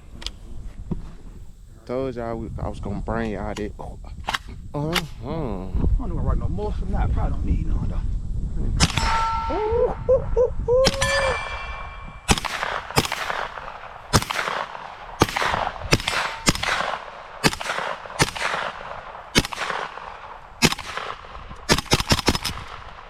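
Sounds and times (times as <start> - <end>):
gunshots: 8.8 - 9.3, 10.9 - 23.0
metallic clang of steel target: 8.8 - 9.8, 10.9 - 13.6.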